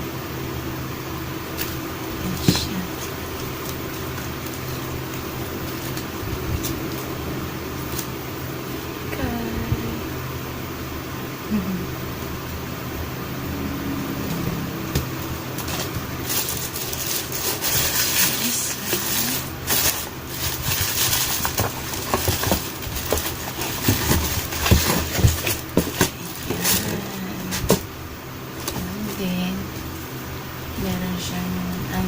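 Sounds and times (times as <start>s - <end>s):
low background hum: 0.0s - 32.0s
packaging rustling and crinkling: 1.6s - 7.2s, 15.6s - 27.9s.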